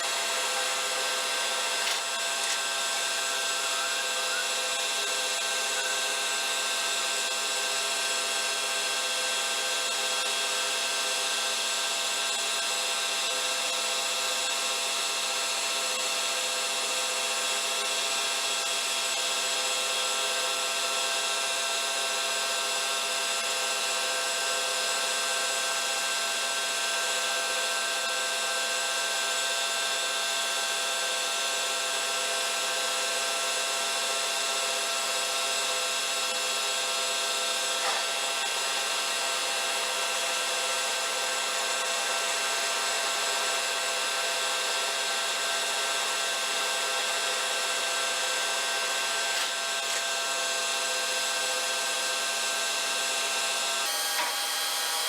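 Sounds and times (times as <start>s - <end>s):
machine tool cutting metal: 0.0s - 6.1s, 37.2s - 40.2s, 48.8s - 51.2s, 53.9s - 55.0s.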